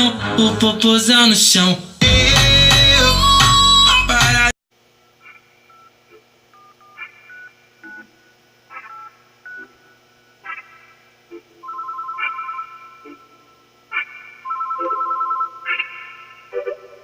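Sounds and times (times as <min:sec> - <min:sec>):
electronic ringtone pulsing: 0:11.6 - 0:13.6, 0:14.4 - 0:17.0.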